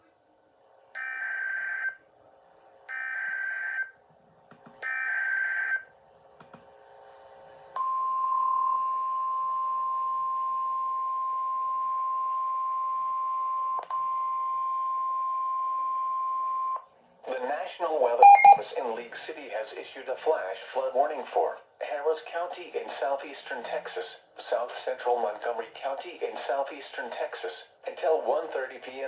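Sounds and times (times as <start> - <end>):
steady high attention tone: 18.2 - 18.6.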